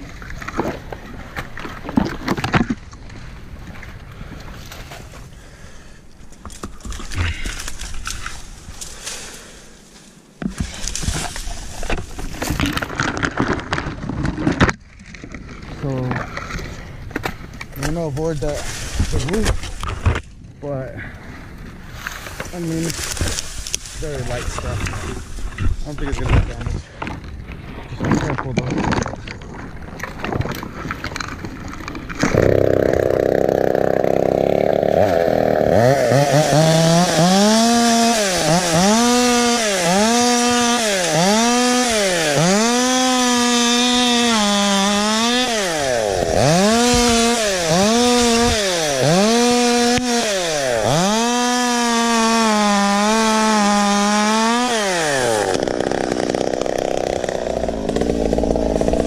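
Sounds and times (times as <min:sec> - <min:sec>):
chainsaw revving: 0:32.2 - 0:59.0.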